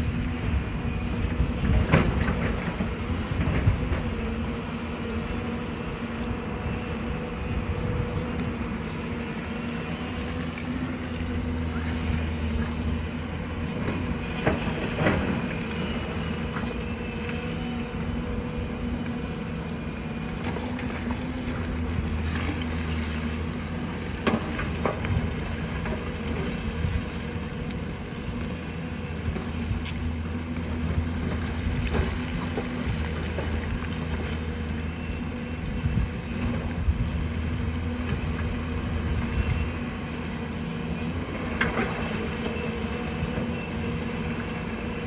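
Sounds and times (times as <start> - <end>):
excavator diesel engine running: 0.0 - 45.0.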